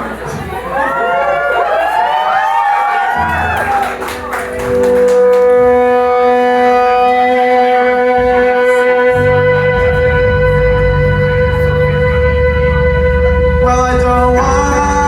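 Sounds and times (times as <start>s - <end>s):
crowd cheering: 0.0s - 6.8s
live band playing: 3.2s - 15.0s
low bass notes: 3.2s - 15.0s
long steady high note: 4.8s - 15.0s.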